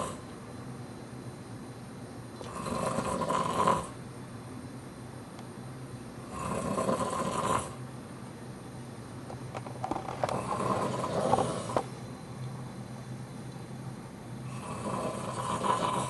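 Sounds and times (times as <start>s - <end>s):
loud snoring: 0.0s - 0.2s, 2.5s - 4.0s, 6.2s - 7.8s, 10.3s - 11.8s, 14.5s - 16.0s.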